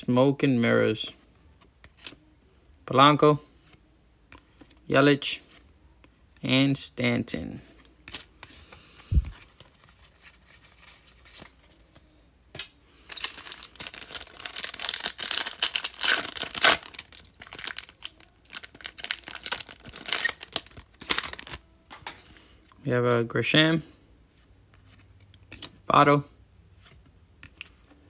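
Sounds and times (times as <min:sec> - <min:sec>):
foil wrapper tearing and crinkling: 0:13.1 - 0:22.2.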